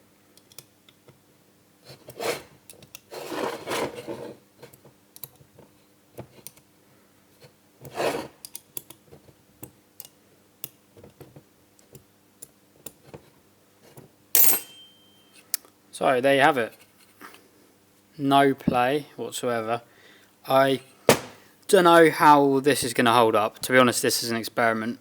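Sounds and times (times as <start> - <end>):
small metal clicks and taps: 0.4 - 1.2, 4.7 - 5.4, 8.4 - 9.0, 9.6 - 11.2
metal scraping and rubbing: 3.1 - 4.4
sharp metal clatter: 14.4 - 15.2.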